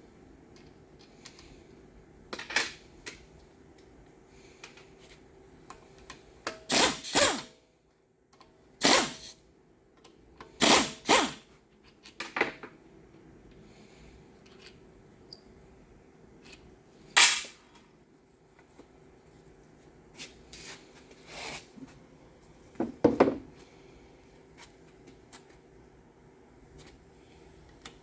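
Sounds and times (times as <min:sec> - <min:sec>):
impact wrench bursts: 0:06.6 - 0:07.5, 0:08.8 - 0:09.4, 0:10.6 - 0:11.5.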